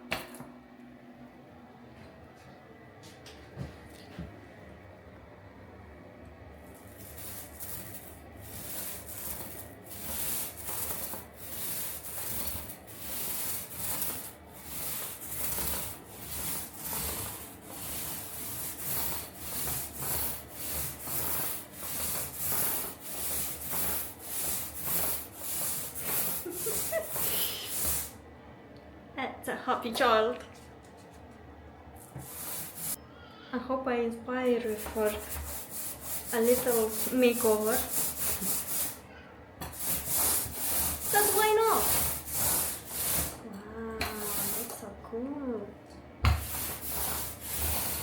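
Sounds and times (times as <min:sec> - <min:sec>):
sandpaper rubbing wall filler: 0:06.6 - 0:28.2, 0:32.0 - 0:33.0, 0:34.6 - 0:39.0, 0:39.6 - 0:43.4, 0:44.0 - 0:44.9, 0:46.2 - 0:48.0.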